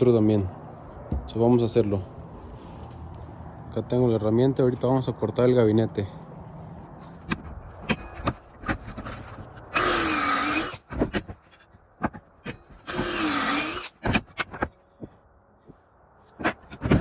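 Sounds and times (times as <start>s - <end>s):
handling knocks and clicks: 7.1s - 9.7s, 14.0s - 17.0s
power drill boring into wood: 9.7s - 10.8s, 12.8s - 14.0s.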